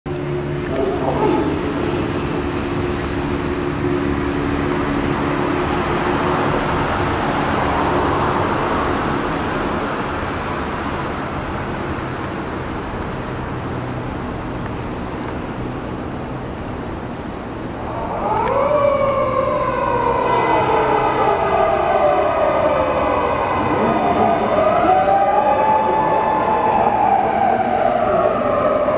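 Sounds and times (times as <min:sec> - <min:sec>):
traffic and engine noise: 0:00.1 - 0:28.9
police siren wailing: 0:00.3 - 0:08.8, 0:17.7 - 0:28.9.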